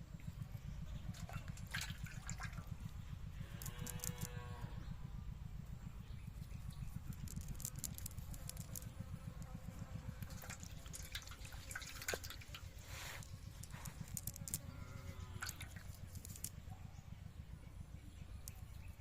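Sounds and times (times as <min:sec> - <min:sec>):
low rumble: 0:00.0 - 0:19.0
water splashing and dripping: 0:01.1 - 0:02.7, 0:10.3 - 0:12.8.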